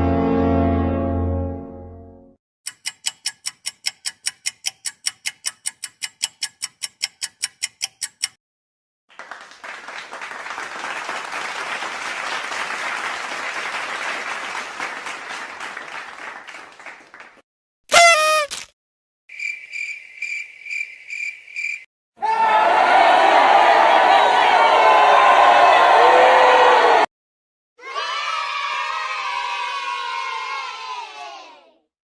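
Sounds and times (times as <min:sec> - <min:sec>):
rapid even ticking: 0:02.7 - 0:08.4
crowd applause: 0:09.1 - 0:17.4
brief loud pitched sound: 0:17.9 - 0:18.7.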